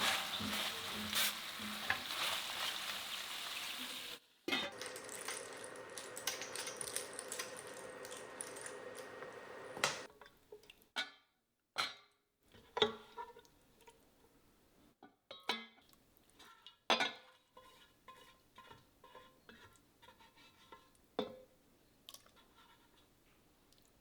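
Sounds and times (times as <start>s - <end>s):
food sizzling in a frying pan: 0.0s - 10.1s
utensils clinking on dishes: 4.6s - 10.1s.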